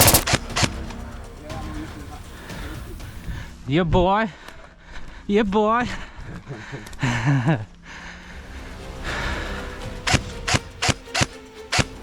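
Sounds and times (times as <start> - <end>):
background music held notes: 0.0 - 3.9, 8.2 - 12.0.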